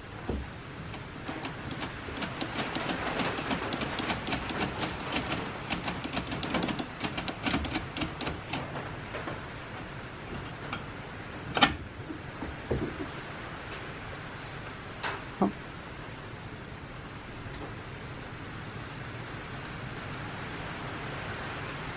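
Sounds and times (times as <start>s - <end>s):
manual typewriter clacking: 0.9s - 11.9s.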